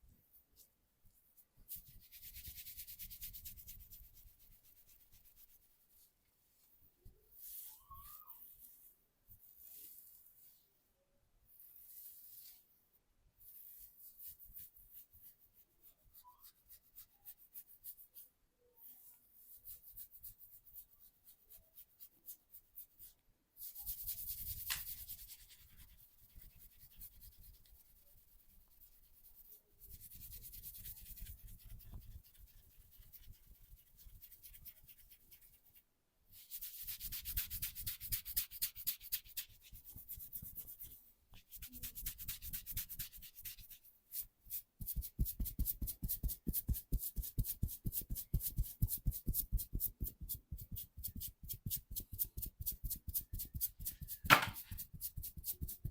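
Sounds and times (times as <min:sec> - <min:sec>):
hands rubbing skin: 0:19.7 - 0:55.9.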